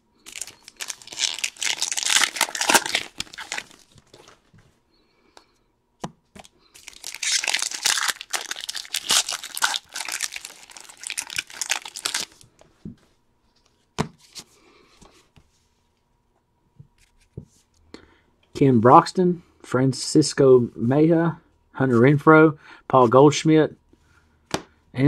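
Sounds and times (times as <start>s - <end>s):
faint rustling of cards: 0.2s - 4.8s
wrapper tearing and crinkling: 0.3s - 4.4s, 6.8s - 12.4s.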